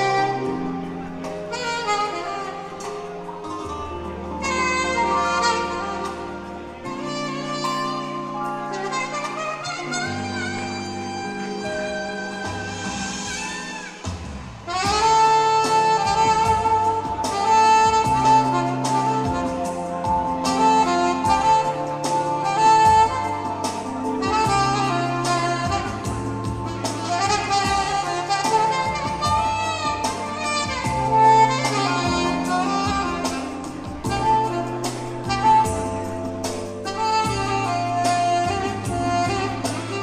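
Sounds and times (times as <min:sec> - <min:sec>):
bass line: 0:00.0 - 0:40.0
saxophone melody: 0:00.0 - 0:40.0
steady beat: 0:00.0 - 0:40.0.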